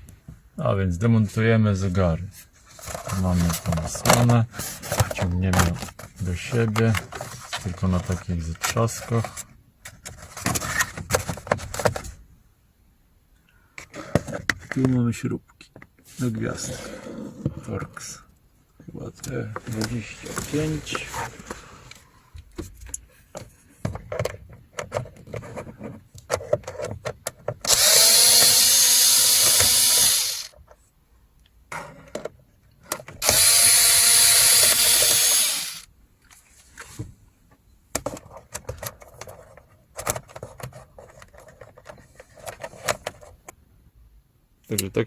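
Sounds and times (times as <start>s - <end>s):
cordless screwdriver running: 27.7s - 30.5s, 33.2s - 35.9s.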